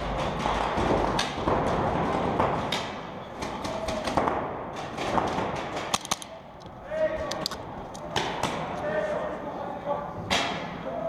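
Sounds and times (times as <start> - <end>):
paintball markers firing: 0.2 - 6.4.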